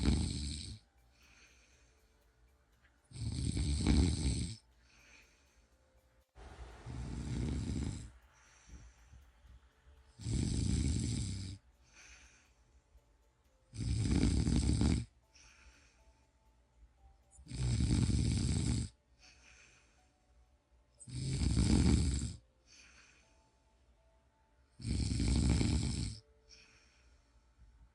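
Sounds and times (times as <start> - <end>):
person snoring: 0.0 - 1.6, 3.1 - 5.2, 6.8 - 9.0, 10.1 - 12.4, 13.7 - 16.0, 17.4 - 19.8, 21.0 - 23.3, 24.7 - 27.0.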